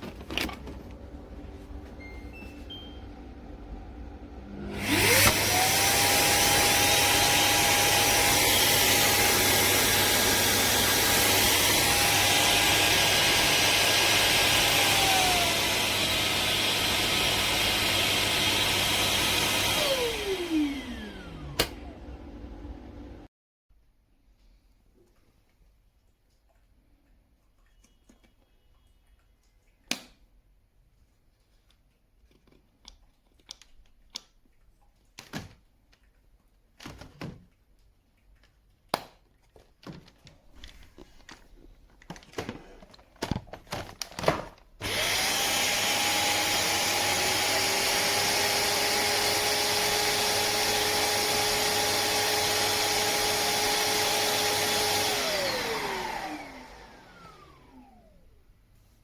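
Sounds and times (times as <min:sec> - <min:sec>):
vacuum motor whining: 0:00.0 - 0:23.3, 0:44.8 - 0:58.3.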